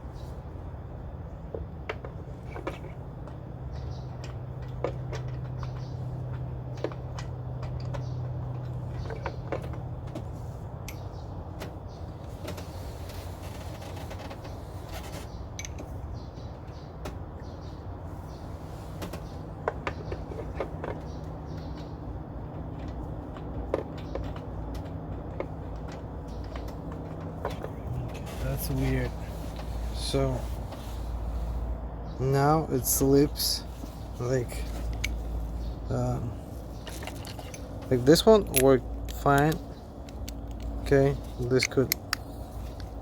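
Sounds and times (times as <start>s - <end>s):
steady low hum: 0.0s - 43.0s
clicks of socket and wrench: 36.9s - 42.9s.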